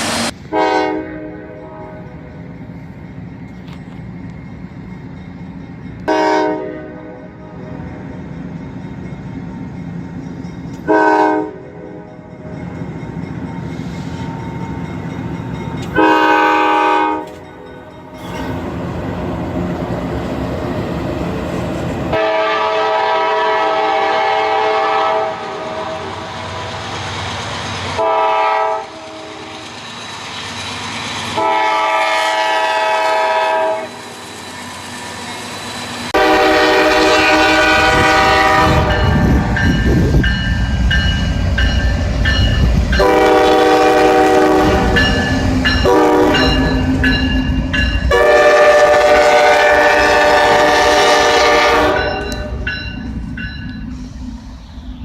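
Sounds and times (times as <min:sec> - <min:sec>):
low rumble of trains: 0:00.0 - 0:55.0
locomotive horn blasts: 0:00.5 - 0:02.2, 0:06.1 - 0:07.6, 0:10.8 - 0:12.1, 0:16.0 - 0:17.5, 0:22.1 - 0:26.2, 0:28.0 - 0:29.6, 0:31.4 - 0:34.0, 0:36.2 - 0:39.5, 0:43.0 - 0:45.2, 0:45.8 - 0:47.0, 0:48.1 - 0:52.6.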